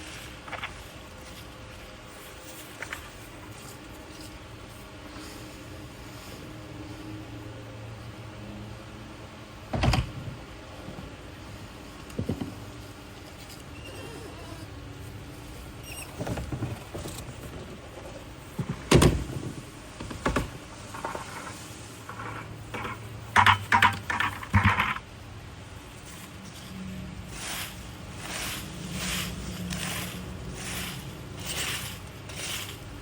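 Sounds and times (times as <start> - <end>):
knocks and clatters: 22.1 - 25.0.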